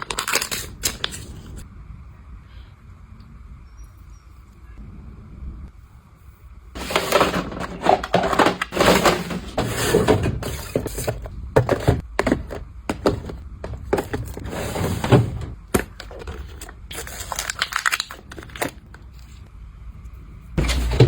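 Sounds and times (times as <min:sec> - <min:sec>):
objects knocked and rustled: 0:06.8 - 0:18.8, 0:20.6 - 0:21.0.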